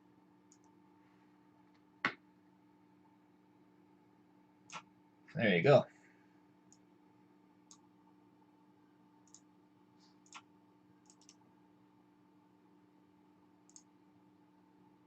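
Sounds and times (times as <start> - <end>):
faint steady hum: 0.0 - 15.0
computer mouse clicks: 0.5 - 0.8, 4.7 - 4.9, 9.2 - 9.5, 10.2 - 11.4, 13.7 - 13.9.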